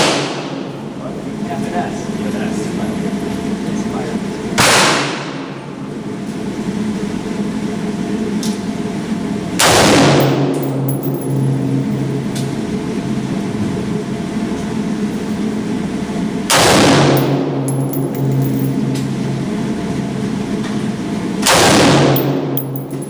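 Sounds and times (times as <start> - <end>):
steady background hum: 0.0 - 23.0
rifle shot with echo: 21.4 - 22.6.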